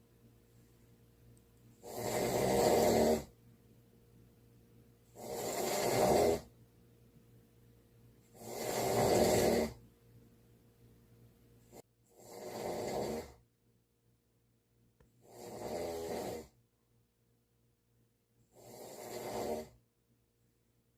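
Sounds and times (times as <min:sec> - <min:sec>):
person snoring loudly: 0:01.8 - 0:03.3, 0:05.1 - 0:06.5, 0:08.3 - 0:09.8, 0:11.7 - 0:13.4, 0:15.2 - 0:16.6, 0:18.5 - 0:19.8.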